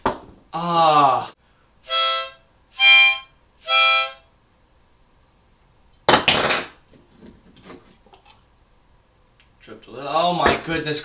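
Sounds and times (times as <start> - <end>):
harmonica note: 1.8 - 4.3.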